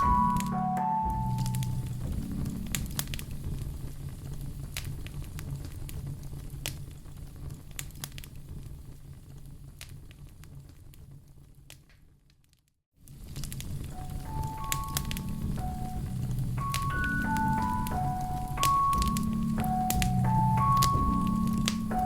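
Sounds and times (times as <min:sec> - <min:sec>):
low rumble: 0:00.0 - 0:06.6
logs crackling in fireplace: 0:01.4 - 0:12.1, 0:13.1 - 0:22.0
fire popping: 0:13.1 - 0:22.0.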